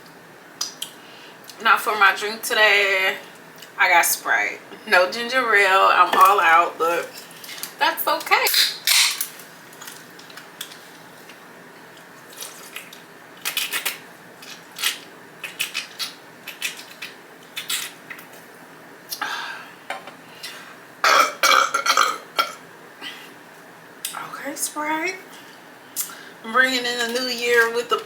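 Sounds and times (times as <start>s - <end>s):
person gulping: 21.0s - 22.6s.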